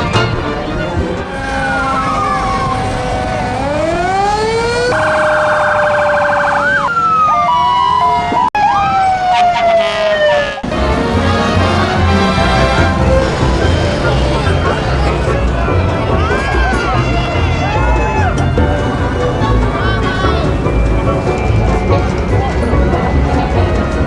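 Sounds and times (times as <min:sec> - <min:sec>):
emergency vehicle sirens: 0:00.0 - 0:24.0.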